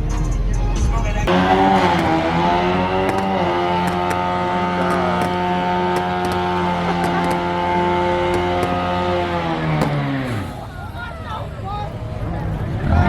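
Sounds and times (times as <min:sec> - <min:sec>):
car engine at high revs: 0:01.3 - 0:10.8.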